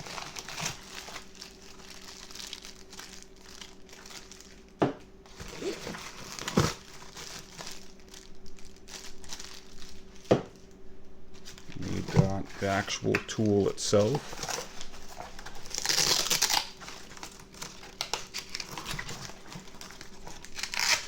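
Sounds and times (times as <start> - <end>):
packaging crinkling and rustling: 0.0 - 21.0.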